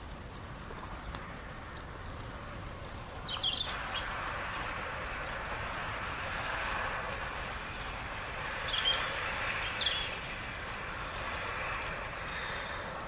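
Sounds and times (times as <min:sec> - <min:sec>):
small birds chirping: 0:07.5 - 0:10.2.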